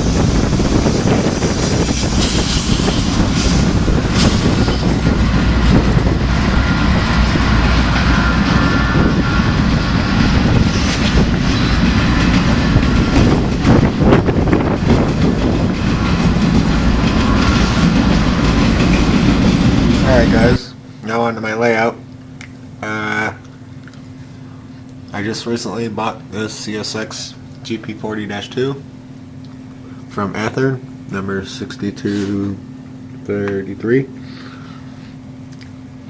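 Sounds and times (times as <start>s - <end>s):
train wheels on rails: 0.0s - 20.7s.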